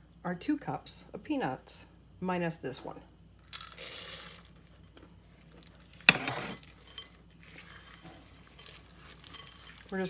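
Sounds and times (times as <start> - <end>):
peanuts pouring into a bowl: 3.5 - 4.6
kitchenware clink: 6.1 - 7.2.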